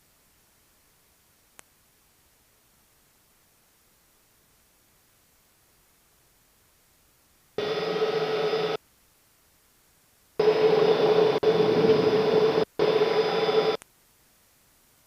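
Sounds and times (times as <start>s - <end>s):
airplane engine and propeller drone: 7.6s - 8.8s, 10.4s - 13.8s.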